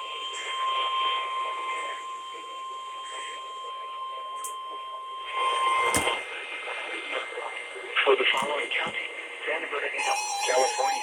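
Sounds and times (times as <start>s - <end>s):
faint radio audio: 0.0s - 11.0s
electronic alert tone: 10.0s - 11.0s.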